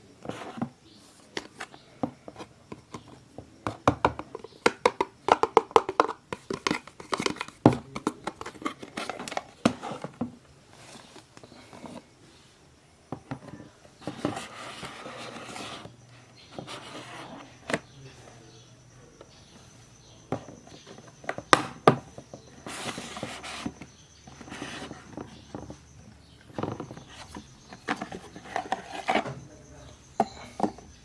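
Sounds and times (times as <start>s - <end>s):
packaging clicks and taps: 1.4s - 10.2s.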